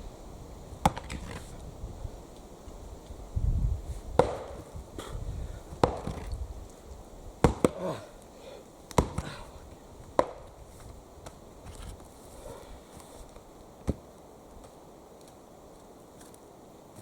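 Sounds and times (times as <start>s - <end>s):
axe chopping wood: 0.8s - 1.4s, 4.2s - 4.6s, 5.7s - 6.3s, 7.4s - 8.0s, 8.9s - 9.4s, 10.2s - 10.5s.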